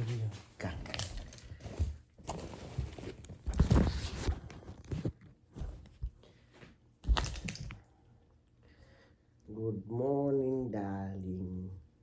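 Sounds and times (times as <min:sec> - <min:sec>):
rustling and handling: 0:00.0 - 0:07.8.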